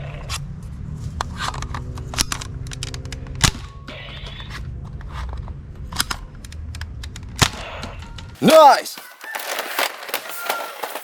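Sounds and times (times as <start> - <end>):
toy guns clicking and snapping: 1.3 - 4.6, 5.9 - 7.6.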